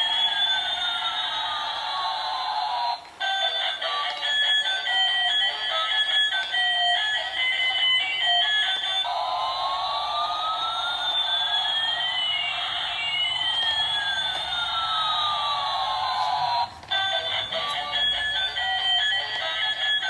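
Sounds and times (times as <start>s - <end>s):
tinny toy melody: 0.0s - 20.0s
toy electronic gliding beeps: 3.3s - 20.0s.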